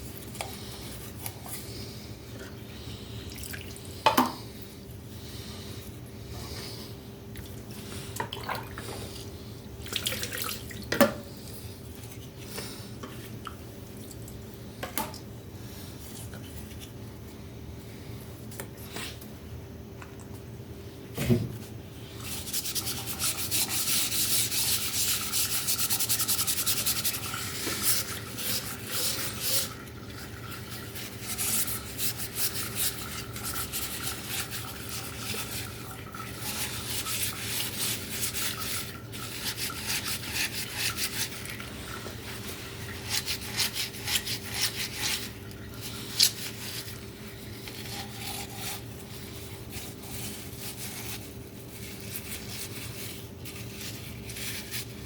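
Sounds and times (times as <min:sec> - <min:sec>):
faint steady hum: 0:00.0 - 0:55.0
abrasive scrubbing on hard surface: 0:22.2 - 0:55.0.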